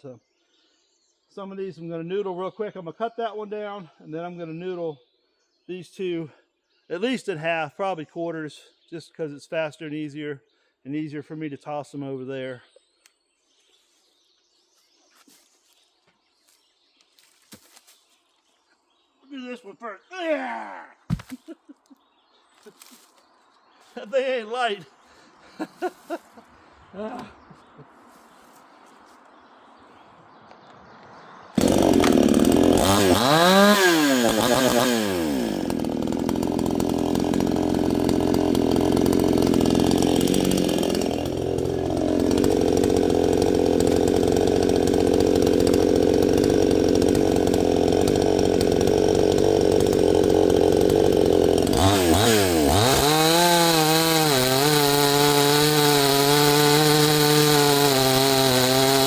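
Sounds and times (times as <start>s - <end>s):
chainsaw revving and cutting wood: 21.1s - 21.5s, 22.6s - 23.2s, 31.5s - 59.0s.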